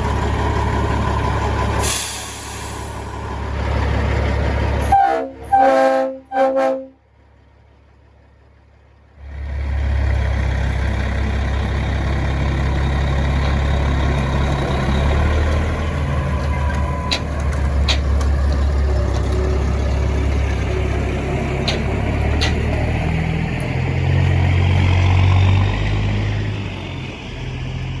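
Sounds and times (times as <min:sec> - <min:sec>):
diesel truck engine rumbling: 0:00.0 - 0:28.0
train horn blast: 0:04.8 - 0:07.0.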